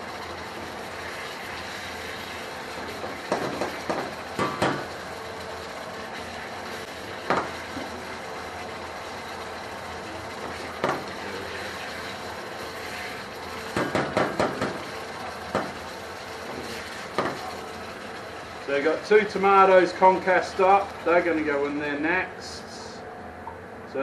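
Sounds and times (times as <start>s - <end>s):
steady hiss and hum: 0.0s - 24.0s
utensil knocking against pan: 3.3s - 4.9s, 7.3s - 7.6s, 10.8s - 11.1s, 13.7s - 14.8s.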